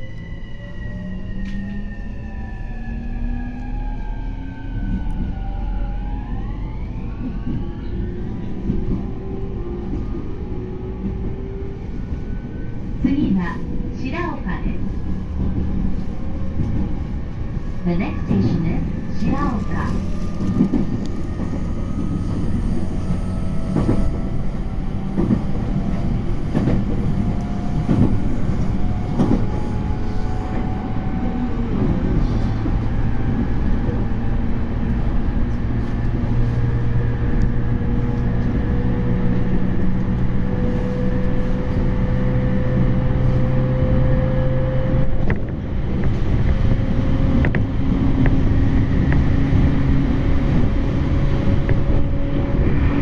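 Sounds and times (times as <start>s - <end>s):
train running gear rumble: 0.0s - 53.0s.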